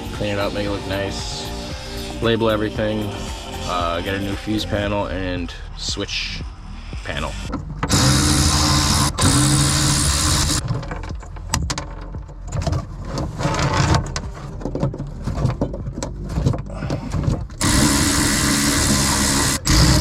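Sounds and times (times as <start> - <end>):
handheld power tool running: 7.9 - 10.6, 17.6 - 20.0
knocking and clatter: 10.0 - 17.6.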